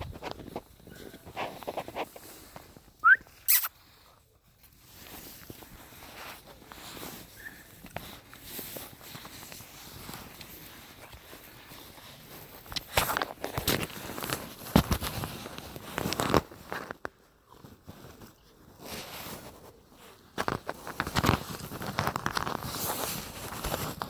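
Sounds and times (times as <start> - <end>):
puppy squeak: 3.0 - 3.7
puppies scuffling and pattering: 3.5 - 24.0.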